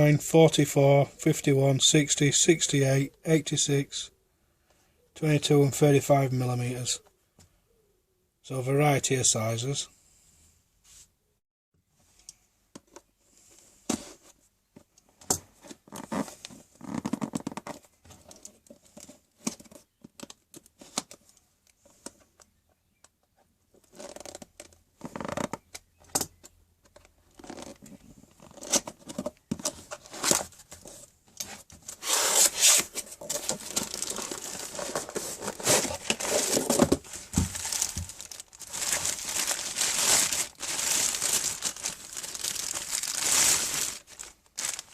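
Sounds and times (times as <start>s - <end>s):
packaging torn and crumpled: 32.2s - 44.9s.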